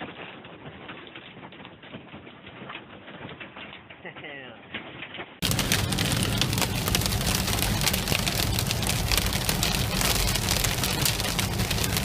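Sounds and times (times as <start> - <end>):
hail and rain on vehicle: 5.4 - 12.0
low rumble: 5.4 - 12.0.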